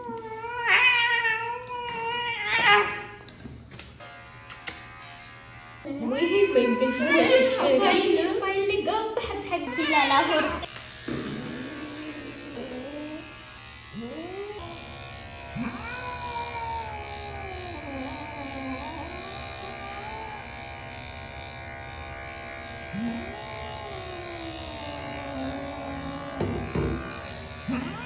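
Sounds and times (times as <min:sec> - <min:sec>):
cat yowling: 0:00.0 - 0:03.2.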